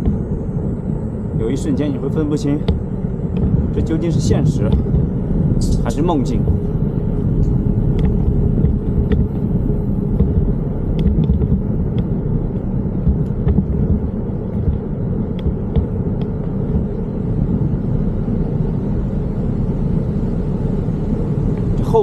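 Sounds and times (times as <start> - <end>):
bicycle tyres on road: 0.0 - 22.0
wind on microphone: 0.0 - 22.0.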